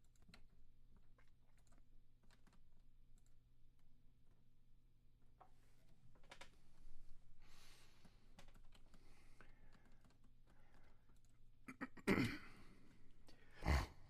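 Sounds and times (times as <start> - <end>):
computer keys clicking: 0.0 - 4.4, 8.3 - 11.5.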